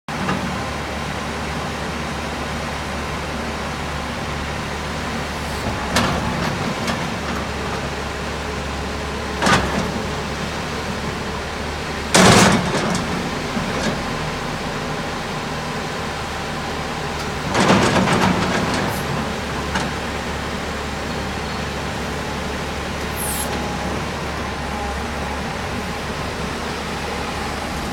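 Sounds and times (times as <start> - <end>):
excavator diesel engine idling: 0.2 - 27.9
rushing clattering bursts: 17.2 - 24.6.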